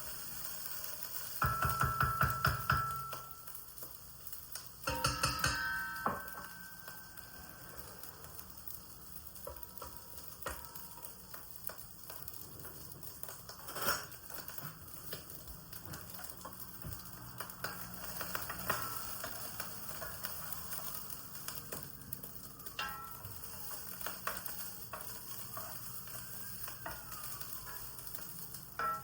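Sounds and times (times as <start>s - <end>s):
food sizzling in a pan: 0.0s - 29.0s
utensil clicking against pan: 16.0s - 29.0s.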